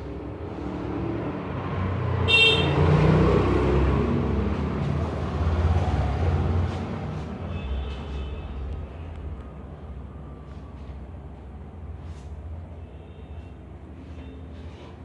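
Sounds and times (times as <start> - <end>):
car horn toot: 2.3 - 2.9.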